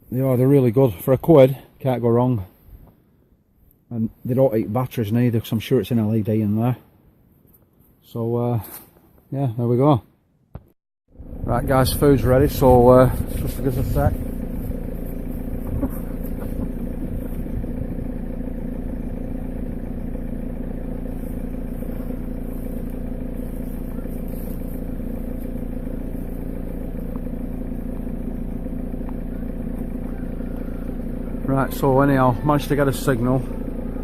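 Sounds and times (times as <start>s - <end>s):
engine idling hum: 11.1s - 34.0s.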